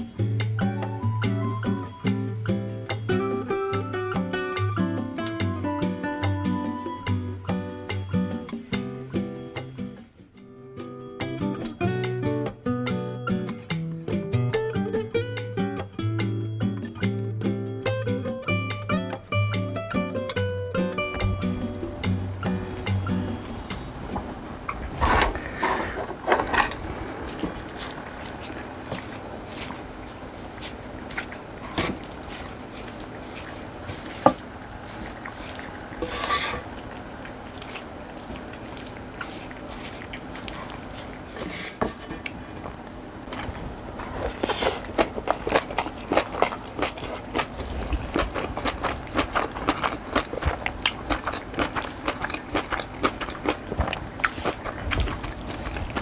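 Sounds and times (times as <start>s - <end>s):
person chewing and crunching food: 21.2s - 56.0s.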